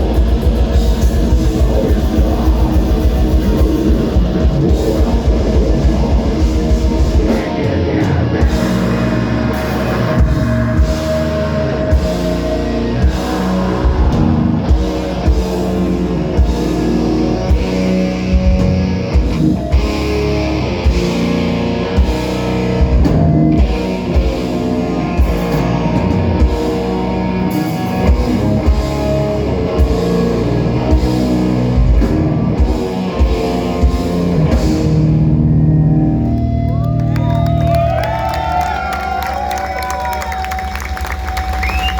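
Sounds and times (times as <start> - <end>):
distorted electric guitars: 0.0 - 41.9.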